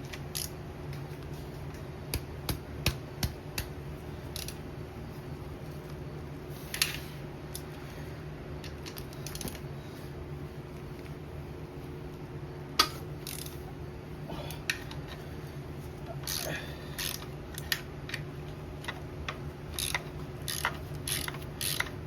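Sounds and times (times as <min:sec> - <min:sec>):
socket ratchet clicking: 0:19.8 - 0:22.0.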